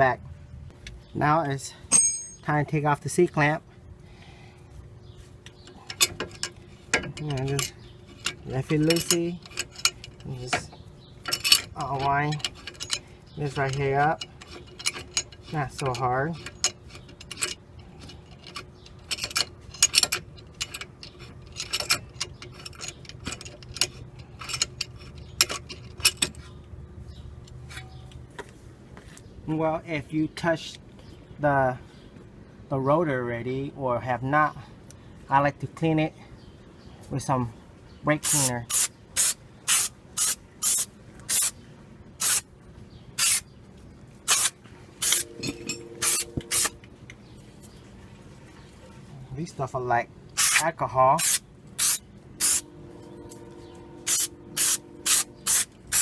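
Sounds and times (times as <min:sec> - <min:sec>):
steady low hum: 0:00.0 - 0:56.0
metallic clicks and clinks: 0:11.2 - 0:26.4, 0:45.0 - 0:46.8.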